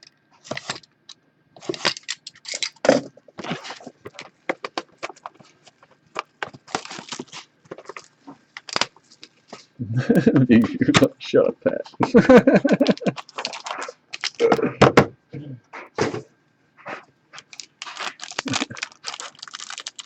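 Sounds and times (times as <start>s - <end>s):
plastic wrapping crinkling and tearing: 0.4s - 0.9s, 1.6s - 9.8s, 12.6s - 14.6s, 16.8s - 20.0s
cards being handled: 16.8s - 20.0s.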